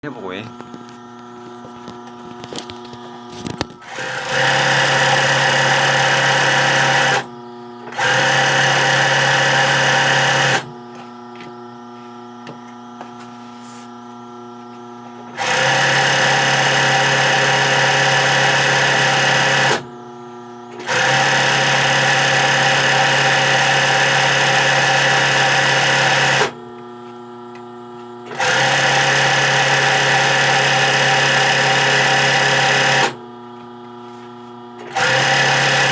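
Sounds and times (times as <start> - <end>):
sewing machine stitching: 3.8 - 7.3, 7.9 - 10.7, 15.3 - 19.9, 20.7 - 26.6, 28.3 - 33.2, 34.8 - 35.9.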